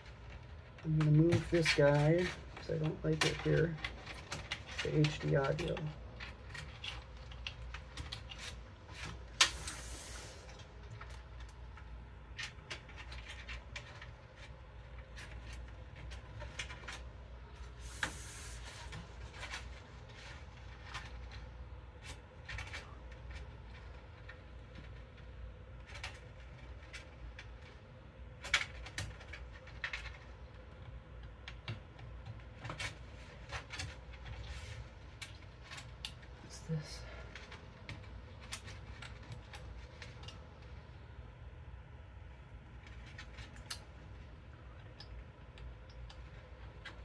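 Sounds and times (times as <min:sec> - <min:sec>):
clicks and knocks of handled parts: 0:00.0 - 0:09.8.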